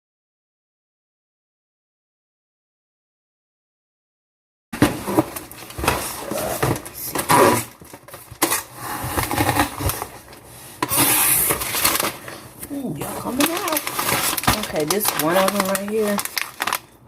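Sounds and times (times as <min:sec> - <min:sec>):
packaging crinkling and rustling: 0:04.8 - 0:17.0.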